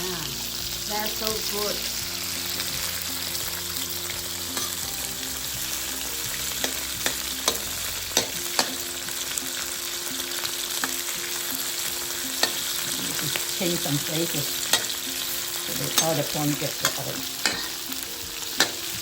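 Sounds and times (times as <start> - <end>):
prawns sizzling in oil: 0.0 - 19.0
sharp clinks against wok: 4.6 - 4.8, 6.6 - 8.8, 12.4 - 12.8, 14.7 - 15.0, 15.9 - 17.9, 18.5 - 19.0.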